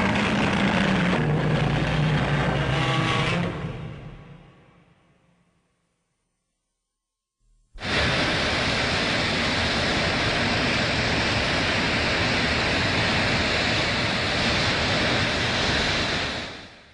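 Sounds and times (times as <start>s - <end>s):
roar of large fire burning: 0.0s - 4.3s, 7.8s - 16.8s.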